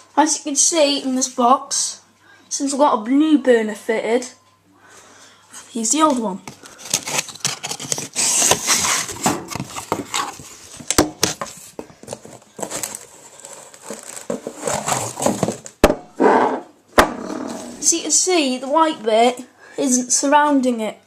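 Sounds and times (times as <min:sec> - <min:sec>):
cardboard box rustling: 0:06.0 - 0:15.8.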